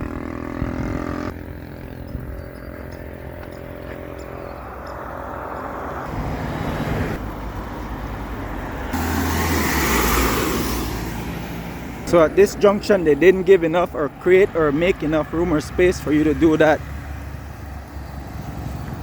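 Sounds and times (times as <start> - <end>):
car engine humming: 0.0 - 19.0
road and tyre noise: 0.0 - 19.0.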